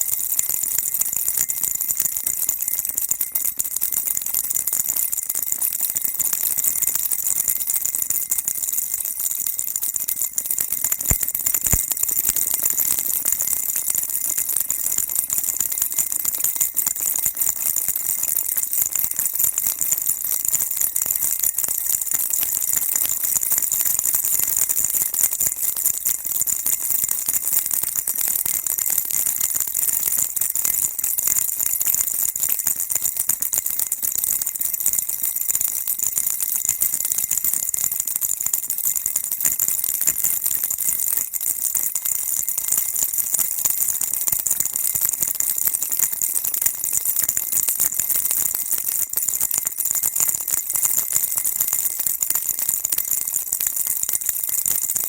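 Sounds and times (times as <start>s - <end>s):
baby rattle shaking: 11.0s - 12.6s.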